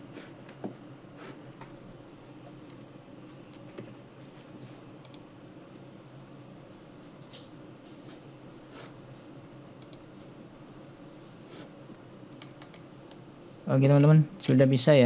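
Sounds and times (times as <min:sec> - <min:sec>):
faint steady hum: 0:00.0 - 0:15.0
laptop keystrokes and clicks: 0:03.5 - 0:04.0, 0:05.0 - 0:05.3, 0:09.8 - 0:10.0, 0:12.4 - 0:13.2.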